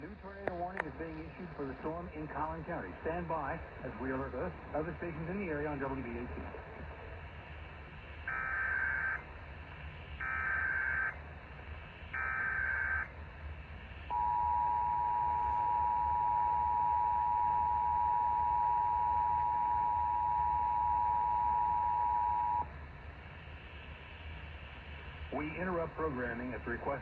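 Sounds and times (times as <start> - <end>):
two-tone attention signal: 14.1 - 22.6.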